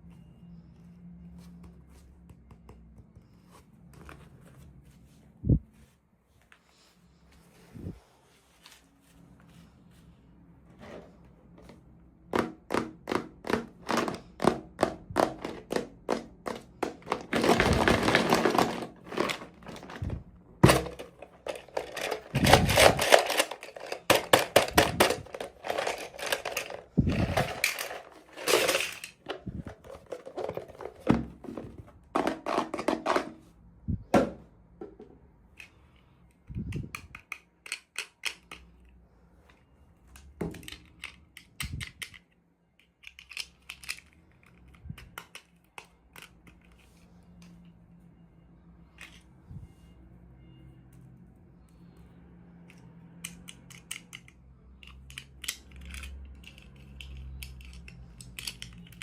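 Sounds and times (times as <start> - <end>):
packaging rustling: 17.1 - 32.0.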